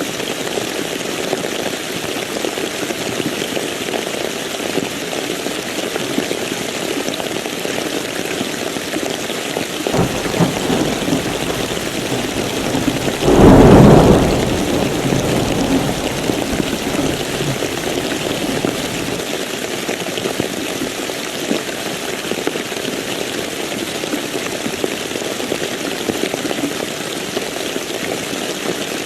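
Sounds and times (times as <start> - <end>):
loud thunderclap: 10.0 - 19.2
steady rain: 10.0 - 19.2
thunder rumbling: 10.0 - 19.2.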